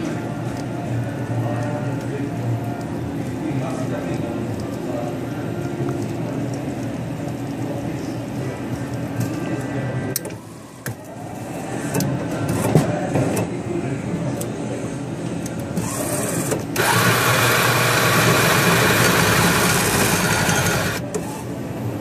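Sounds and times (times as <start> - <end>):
espresso machine motor hum: 16.8 - 21.0.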